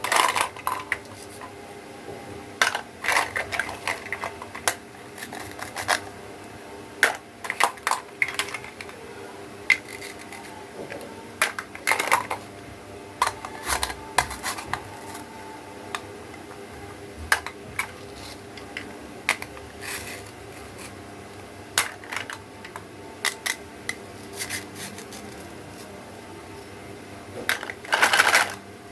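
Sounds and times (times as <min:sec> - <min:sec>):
plastic toy pieces clicking: 0:07.0 - 0:08.9, 0:27.5 - 0:28.6.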